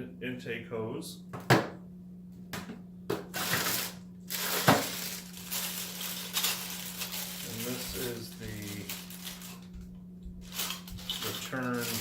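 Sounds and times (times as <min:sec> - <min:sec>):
packaging rustling: 0:03.4 - 0:12.0.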